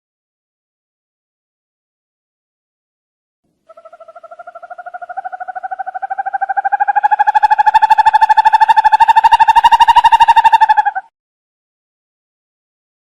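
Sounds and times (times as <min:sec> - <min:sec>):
owl trilling: 0:03.7 - 0:11.1.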